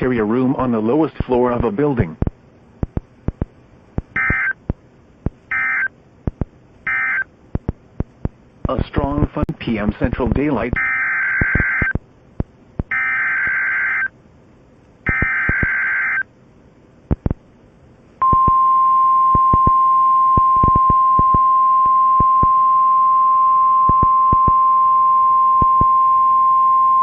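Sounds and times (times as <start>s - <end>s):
radio static crackles: 0.0s - 14.1s, 15.0s - 16.3s, 17.0s - 17.5s, 20.4s - 21.4s
steady warning alarm tone: 4.0s - 4.6s, 5.5s - 5.9s, 6.8s - 7.3s, 10.7s - 12.0s, 12.8s - 14.1s, 15.0s - 16.3s
buzzy data squeals: 4.1s - 4.6s.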